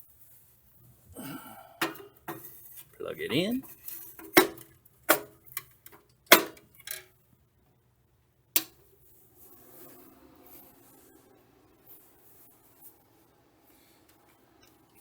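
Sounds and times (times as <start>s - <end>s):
plastic and metal clicks and knocks: 3.6s - 7.0s.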